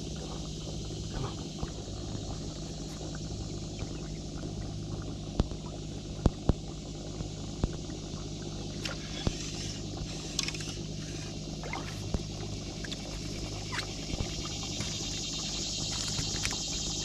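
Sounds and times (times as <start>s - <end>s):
boat motor humming: 0.0s - 17.0s.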